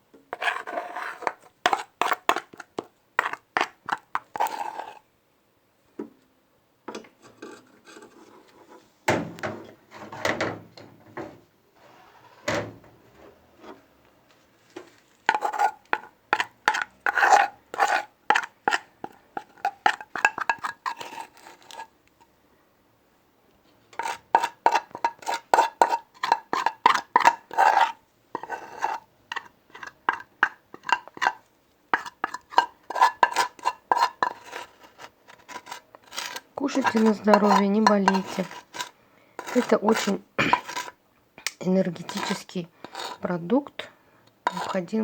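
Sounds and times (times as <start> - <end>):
utensil scraping and tapping: 0.1 - 5.0, 6.9 - 8.8, 14.7 - 22.2, 23.9 - 43.6, 44.4 - 45.0.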